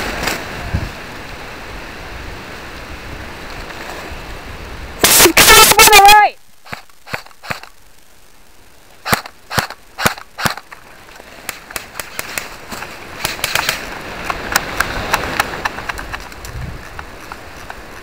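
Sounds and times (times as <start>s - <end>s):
rustling: 6.4s - 18.0s
airsoft gun shots: 6.7s - 7.7s, 9.0s - 10.6s.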